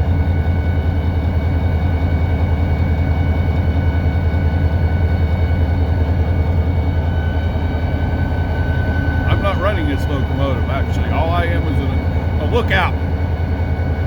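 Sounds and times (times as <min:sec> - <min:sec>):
diesel locomotive engine drone: 0:00.0 - 0:14.0
steady high whine: 0:05.0 - 0:14.0.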